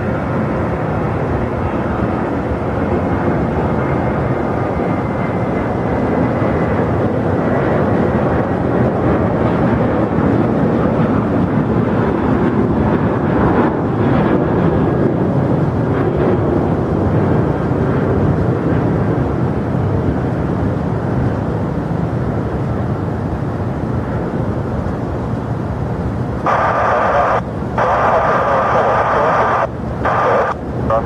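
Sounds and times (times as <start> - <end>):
jet engines rumbling: 0.0 - 31.0
radio hiss: 26.5 - 31.0.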